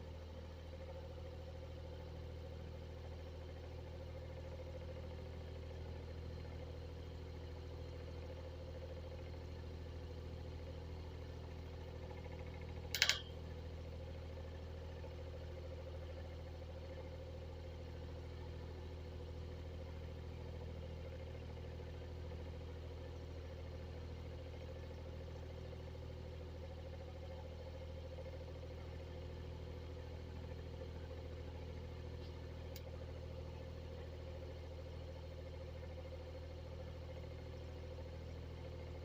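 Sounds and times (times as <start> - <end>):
exhaust fan motor hum: 0.0 - 39.0
faint tick: 32.2 - 32.9.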